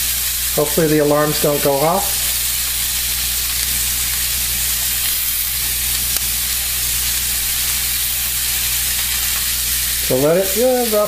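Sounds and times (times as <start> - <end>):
vegetables sizzling in a pan: 0.0 - 11.0.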